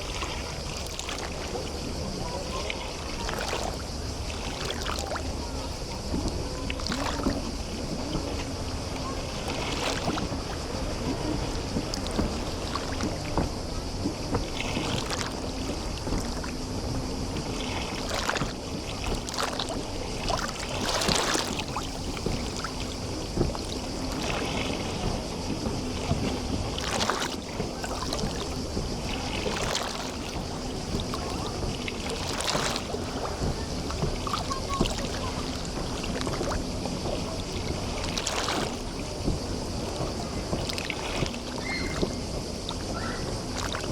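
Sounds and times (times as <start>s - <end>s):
sea water lapping against shore: 0.0s - 43.9s.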